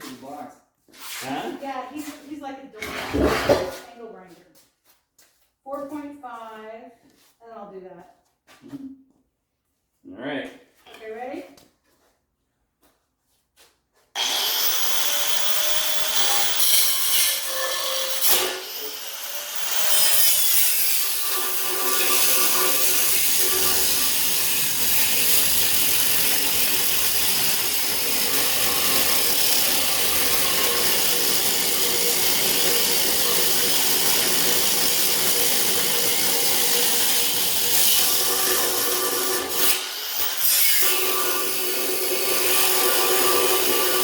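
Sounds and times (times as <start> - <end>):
power tool cutting steel: 14.2 - 44.0.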